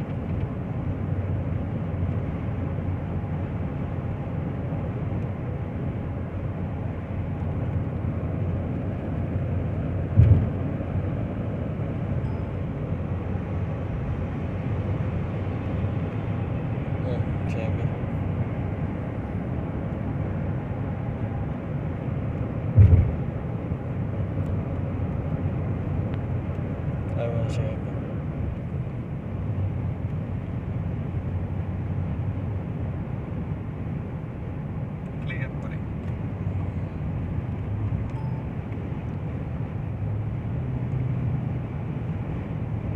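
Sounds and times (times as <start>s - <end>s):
car engine and road noise: 0.0s - 42.9s
short thump: 10.1s - 10.5s, 22.8s - 23.2s.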